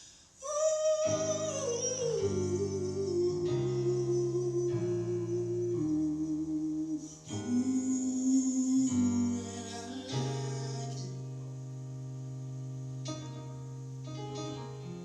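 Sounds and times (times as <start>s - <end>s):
slow rhythm and blues band: 12.4s - 15.0s.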